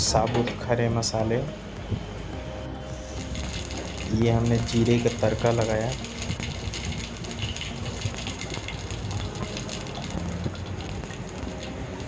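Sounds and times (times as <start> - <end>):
spices sizzling in hot oil: 2.9 - 12.0.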